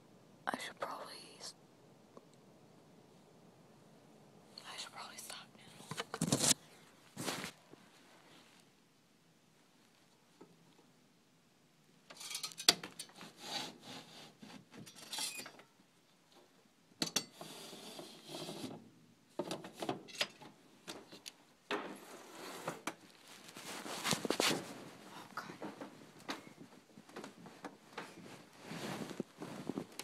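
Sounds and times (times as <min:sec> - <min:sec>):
rubbing and scraping on microphone: 0:05.3 - 0:08.6, 0:22.0 - 0:30.0.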